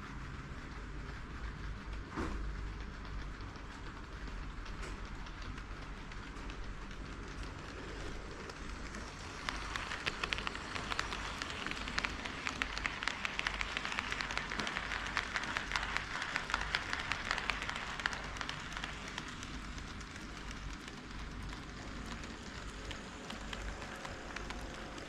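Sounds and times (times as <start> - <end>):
model train wheels clicking: 0.0 - 25.0
model train running hiss: 7.2 - 25.0.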